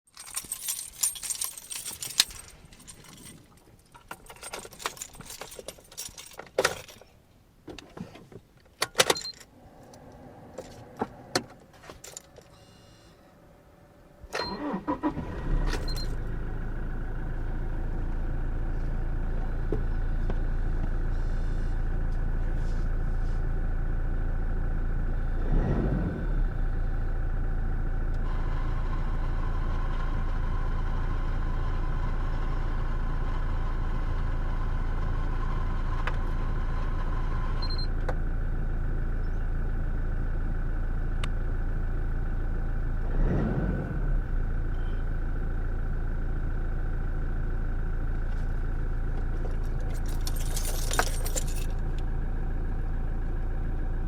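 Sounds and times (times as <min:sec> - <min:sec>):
keys jangling: 0:00.1 - 0:07.2, 0:11.8 - 0:12.6, 0:49.6 - 0:51.8
car engine idling: 0:09.5 - 0:25.7, 0:26.4 - 0:43.3, 0:44.0 - 0:54.0
car starter cranking: 0:14.3 - 0:16.3.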